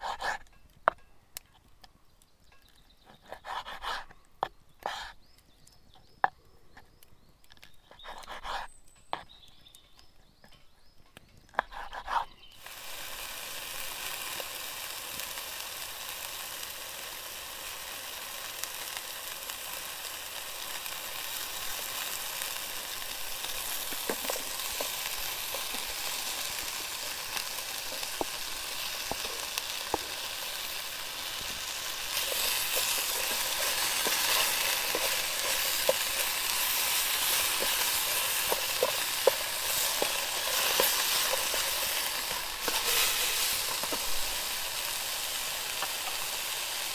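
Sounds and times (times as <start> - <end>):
food sizzling in a hot pan: 12.5 - 46.9
stirring ticks: 17.7 - 46.9.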